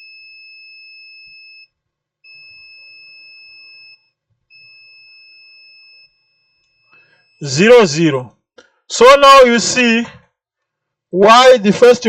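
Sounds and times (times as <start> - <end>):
multimeter continuity beep: 0.0 - 7.8.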